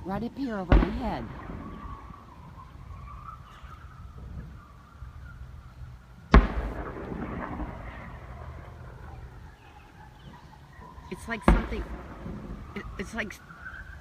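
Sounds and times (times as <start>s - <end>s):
thunder boom: 0.7s - 4.4s, 6.3s - 10.1s, 11.1s - 14.0s.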